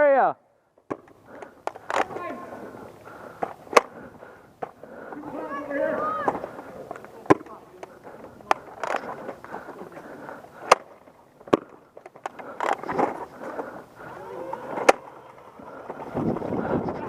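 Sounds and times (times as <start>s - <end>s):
faint distant shouting: 5.1s - 7.8s, 14.0s - 15.5s.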